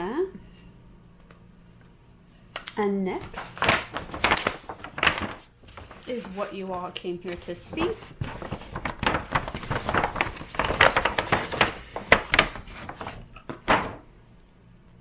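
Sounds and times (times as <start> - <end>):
packaging knocks and rustles: 3.2 - 14.1.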